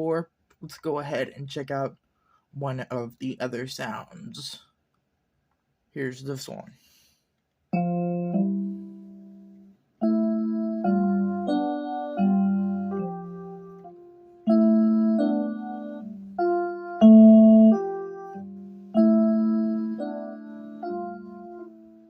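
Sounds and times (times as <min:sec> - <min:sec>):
piano chords: 0:07.8 - 0:22.0.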